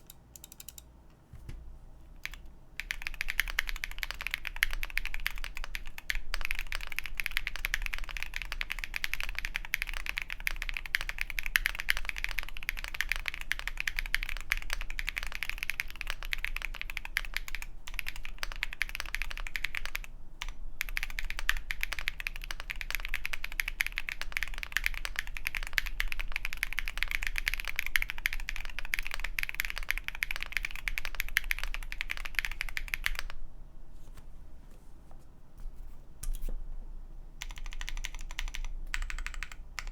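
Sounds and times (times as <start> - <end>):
fast mechanical keyboard typing: 0.0 - 0.8, 2.2 - 33.4, 37.4 - 39.9.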